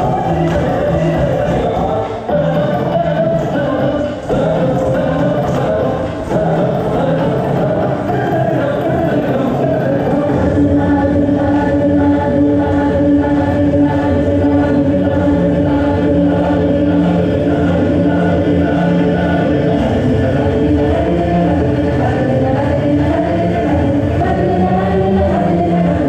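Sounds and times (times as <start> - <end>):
choir singing in unison: 0.0 - 26.0.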